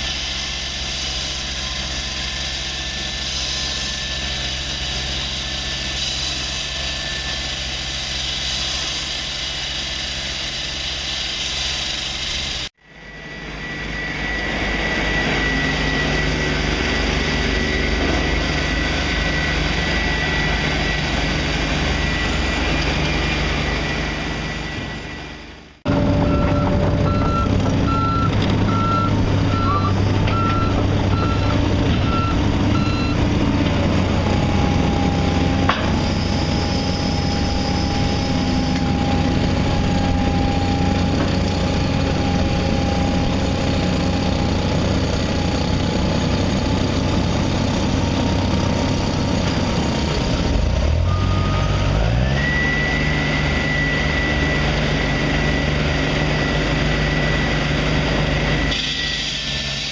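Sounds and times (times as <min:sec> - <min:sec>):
diesel construction machine running: 0:00.0 - 0:59.9
reverse alarm beeping: 0:13.0 - 0:33.3, 0:51.0 - 0:59.4.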